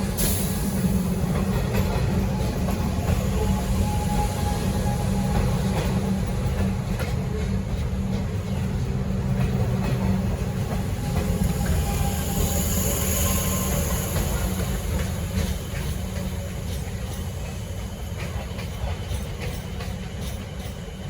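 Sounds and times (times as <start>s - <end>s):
electric train low rumble: 0.0s - 21.0s
wheels clicking over rail joints: 14.1s - 21.0s.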